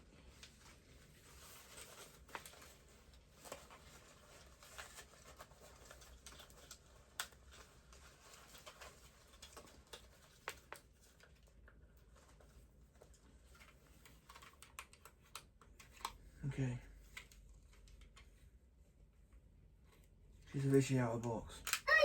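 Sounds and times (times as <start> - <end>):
toy packaging clicks and rustling: 0.3 - 16.3, 20.5 - 22.0.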